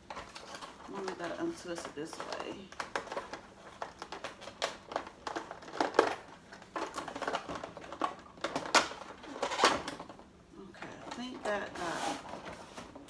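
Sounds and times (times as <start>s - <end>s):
plastic packaging crinkling: 0.0s - 10.2s.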